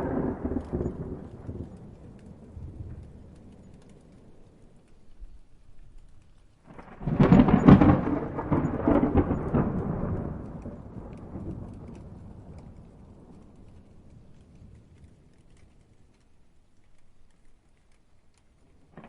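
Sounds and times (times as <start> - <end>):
rolling thunder rumble: 0.0 - 4.8, 6.6 - 16.2
rain falling: 0.0 - 19.0
thunderclap crash: 6.7 - 13.3.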